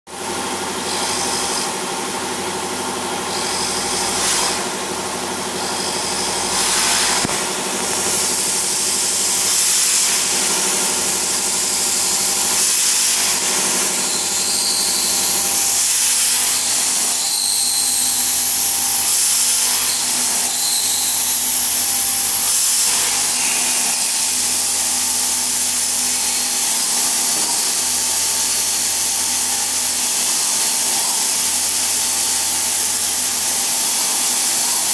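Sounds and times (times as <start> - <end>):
machine cutting glass whine: 0.6 - 2.0, 2.7 - 34.9.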